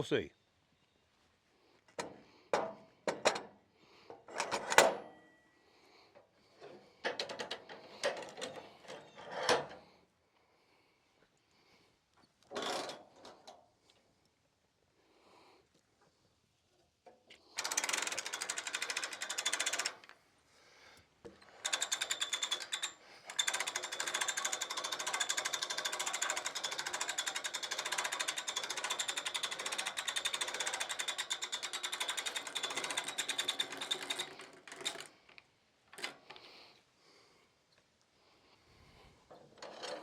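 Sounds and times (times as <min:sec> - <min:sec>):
small machine rattling and whining: 0:02.0 - 0:10.0, 0:17.4 - 0:20.2, 0:21.2 - 0:36.7, 0:38.8 - 0:40.0.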